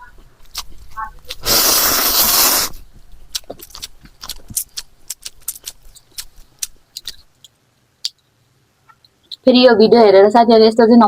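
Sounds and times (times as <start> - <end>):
chewing clicks and crunches: 3.3 - 8.2.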